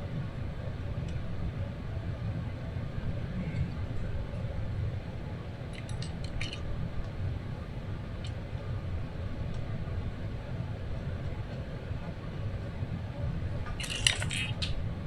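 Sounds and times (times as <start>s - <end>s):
metal bolts clinking: 5.7s - 6.7s, 13.8s - 14.8s.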